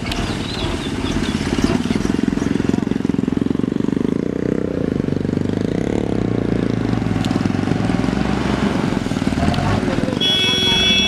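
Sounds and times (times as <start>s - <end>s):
diesel engine chugging: 0.0s - 4.5s.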